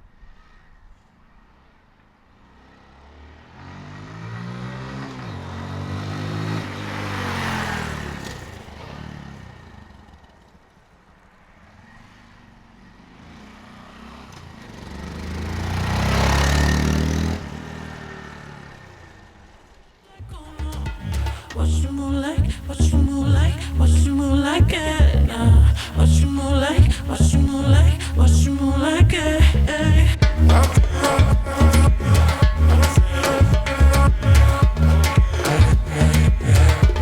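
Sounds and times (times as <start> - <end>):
motorcycle riding past: 2.4 - 20.0.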